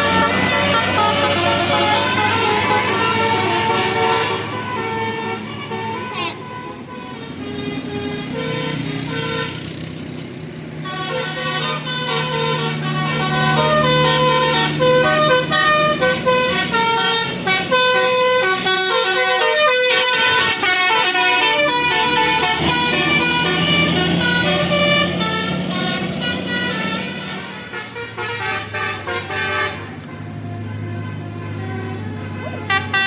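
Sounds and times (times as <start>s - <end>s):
musical bus horn melody: 0.0s - 9.9s, 10.8s - 33.0s
bus engine: 0.0s - 33.0s.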